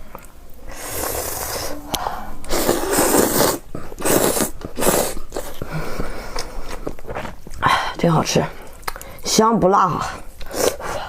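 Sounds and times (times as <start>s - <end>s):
slurping noodles: 0.7s - 7.3s.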